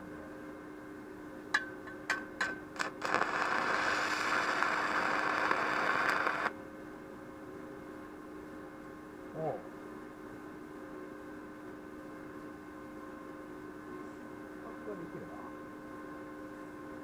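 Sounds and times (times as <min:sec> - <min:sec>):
welding machine hum: 0:02.1 - 0:06.6
welding arc crackling: 0:02.7 - 0:06.5.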